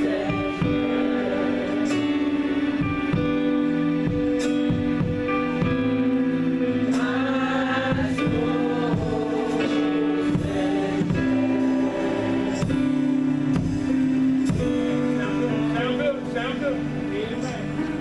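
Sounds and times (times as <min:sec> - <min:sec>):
sustained chords: 0:00.0 - 0:18.0
voices singing gospel: 0:00.0 - 0:18.0
drum hits: 0:02.8 - 0:06.2, 0:07.9 - 0:11.7, 0:12.5 - 0:15.1.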